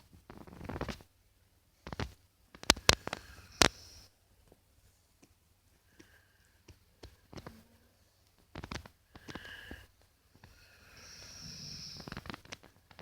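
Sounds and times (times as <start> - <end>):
dog snoring faintly: 10.5 - 12.4.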